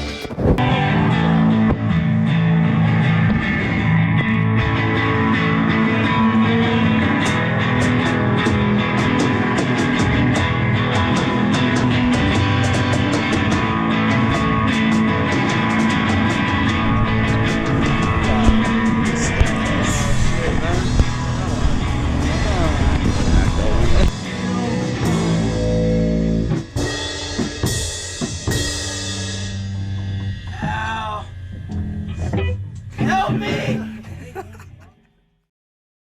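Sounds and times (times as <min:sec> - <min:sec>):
rock band playing: 0:00.0 - 0:34.5
drum and cymbal hits: 0:07.3 - 0:31.8.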